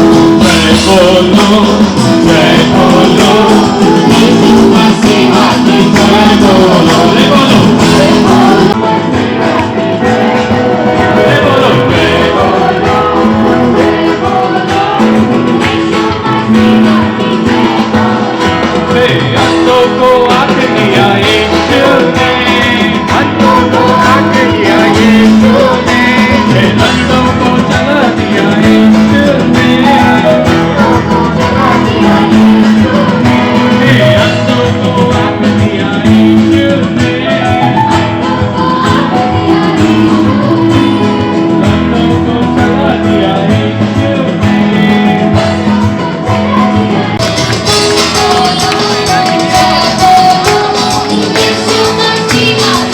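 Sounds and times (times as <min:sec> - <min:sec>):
person singing with guitar: 0:00.0 - 0:52.9.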